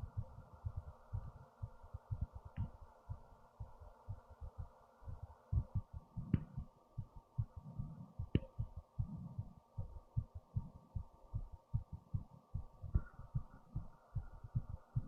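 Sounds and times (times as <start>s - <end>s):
fast heartbeat thumps: 0.0s - 15.0s.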